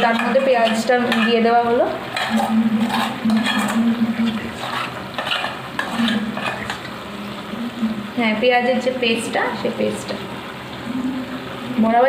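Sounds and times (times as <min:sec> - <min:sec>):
metal spoon scraping frying pan: 0:00.0 - 0:07.0
steady low hum: 0:00.0 - 0:11.9
food sizzling: 0:00.0 - 0:12.0.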